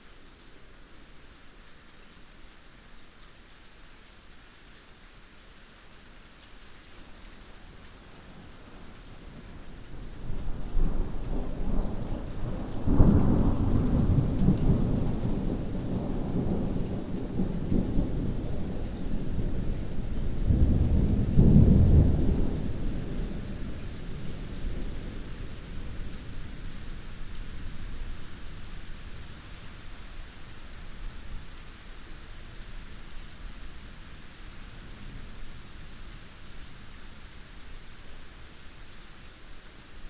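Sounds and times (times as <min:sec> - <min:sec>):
heavy rain falling: 0:00.0 - 0:40.0
rolling thunder: 0:10.2 - 0:28.6.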